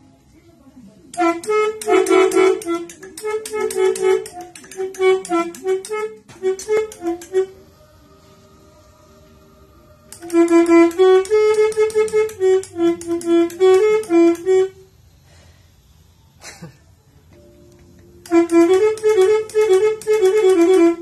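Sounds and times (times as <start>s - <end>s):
multi-tone air horn melody: 1.1s - 8.4s, 10.1s - 15.0s, 18.2s - 21.0s
click: 10.1s - 14.5s.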